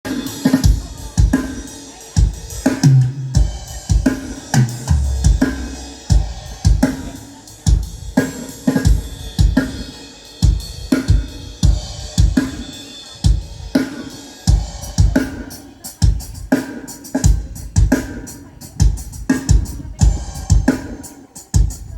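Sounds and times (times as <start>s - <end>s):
drum kit groove: 0.0s - 21.9s
tom drum fill: 2.2s - 8.2s.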